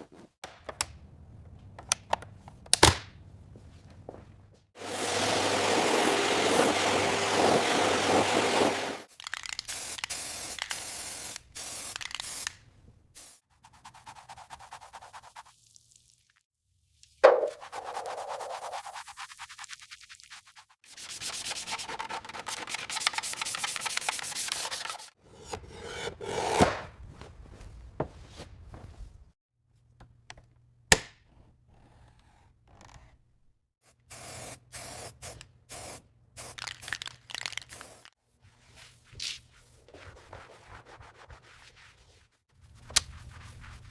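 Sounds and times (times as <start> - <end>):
hissing spray: 4.8 - 12.5.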